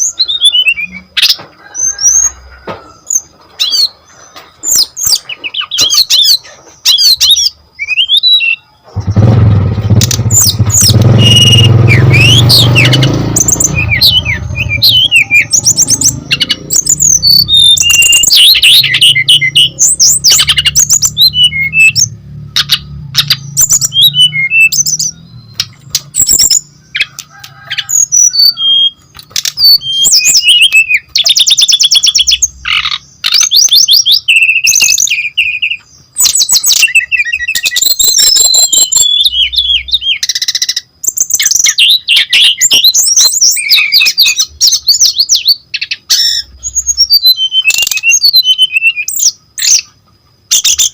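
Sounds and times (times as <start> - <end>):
bird singing chirps and trills: 0.0 - 50.9
loud low rumble: 9.0 - 17.9.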